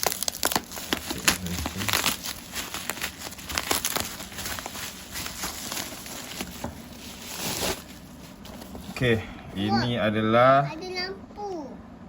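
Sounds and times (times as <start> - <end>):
plastic packaging crinkling: 0.0 - 9.1.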